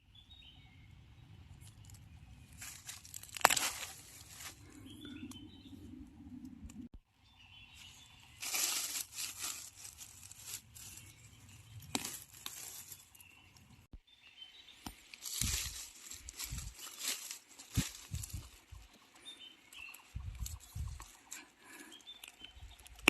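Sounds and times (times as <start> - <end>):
dry leaves rustling and crackling: 1.6 - 4.8, 7.7 - 13.8, 14.9 - 23.0.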